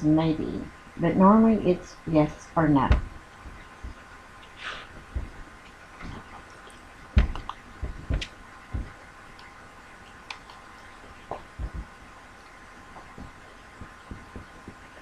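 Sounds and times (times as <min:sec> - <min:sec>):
soft knocks and clicks: 0:07.1 - 0:09.5, 0:11.2 - 0:11.9, 0:12.9 - 0:15.0.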